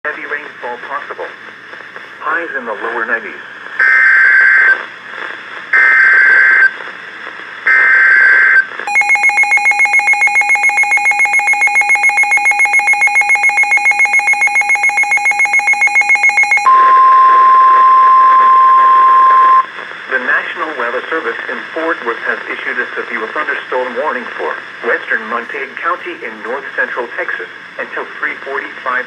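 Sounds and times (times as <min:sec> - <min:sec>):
fast-pulsing electronic alarm beep: 0:08.9 - 0:19.6
screechy digital header tones: 0:08.9 - 0:19.6
steady single-pitch alarm tone: 0:08.9 - 0:19.6.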